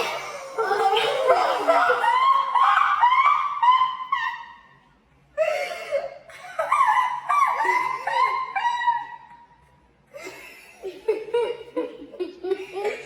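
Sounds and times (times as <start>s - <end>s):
high-pitched laughing: 5.5s - 9.4s.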